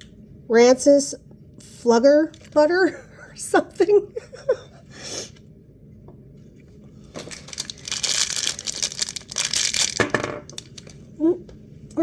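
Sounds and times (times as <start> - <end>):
packaging crinkling and tearing: 7.0 - 11.1.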